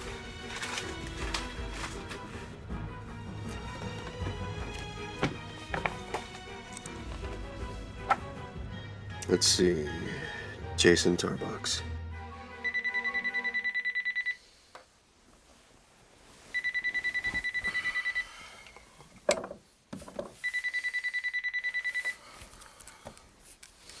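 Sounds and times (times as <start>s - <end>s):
electronic telephone ringing: 12.6s - 14.4s, 16.6s - 18.3s, 20.4s - 22.2s.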